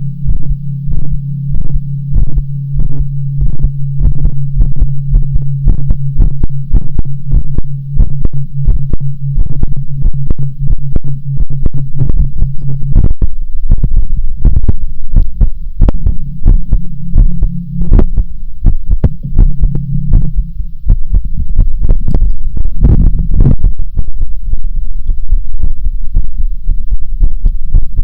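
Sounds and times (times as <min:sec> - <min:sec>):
amplified heartbeat: 0:00.0 - 0:28.0
low steady hum: 0:00.0 - 0:28.0.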